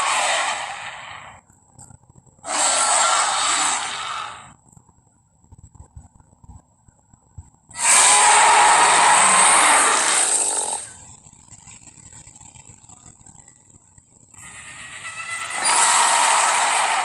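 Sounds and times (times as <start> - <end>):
breathy hissing roar: 0.0 - 1.3, 2.5 - 4.5, 7.8 - 10.9, 15.5 - 17.0.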